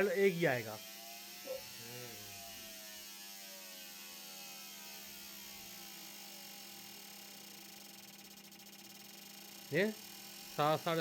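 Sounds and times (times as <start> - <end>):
injectors pulsing: 4.8 - 11.0
steady electrical hum: 4.9 - 11.0.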